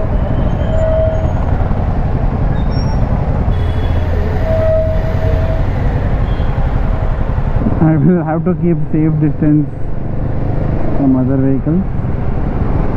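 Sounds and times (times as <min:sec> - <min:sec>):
motorcycle engine rumble: 0:00.0 - 0:12.9
thin steady whine: 0:03.5 - 0:07.6.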